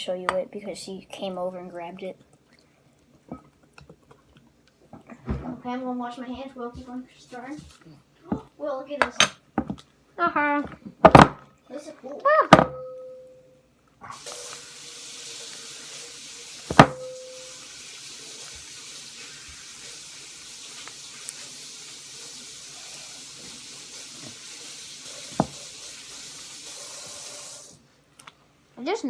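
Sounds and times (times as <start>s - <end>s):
tap water running into sink: 14.1s - 27.8s
sharp knock: 16.7s - 17.3s.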